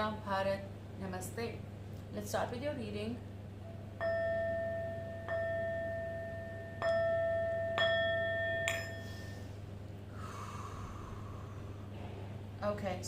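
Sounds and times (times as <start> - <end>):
metal chime ringing: 3.8 - 9.6.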